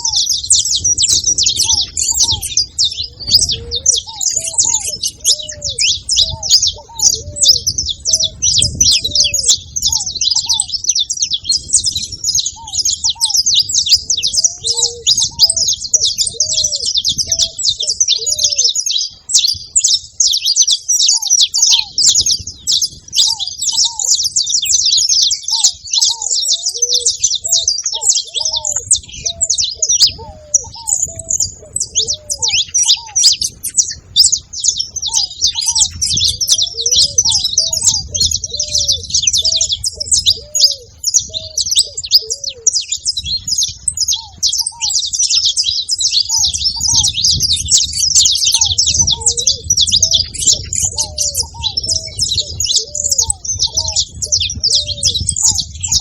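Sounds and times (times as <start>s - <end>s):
short low arched bird calls: 0.0s - 19.1s, 23.2s - 47.6s
finches chirping and trilling: 0.0s - 56.0s.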